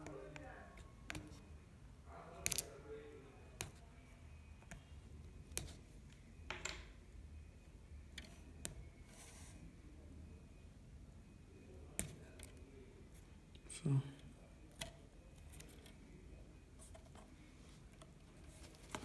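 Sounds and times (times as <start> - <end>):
small clicks and taps of laptop parts: 0.0 - 1.4, 17.9 - 19.0.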